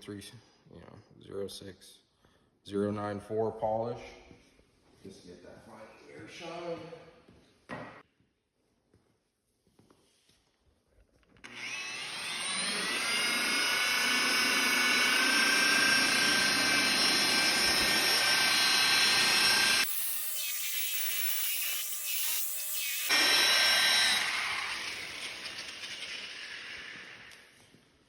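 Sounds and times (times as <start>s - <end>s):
electric buffer whining: 11.4s - 20.9s, 22.1s - 27.4s.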